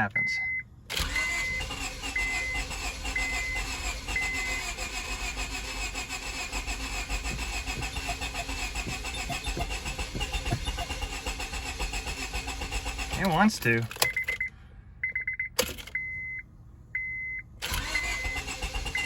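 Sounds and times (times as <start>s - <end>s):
car engine cranking: 0.9s - 14.5s, 17.6s - 19.0s
high warning beeps: 1.3s - 4.7s, 7.2s - 11.0s
uneven thumps: 6.0s - 12.9s.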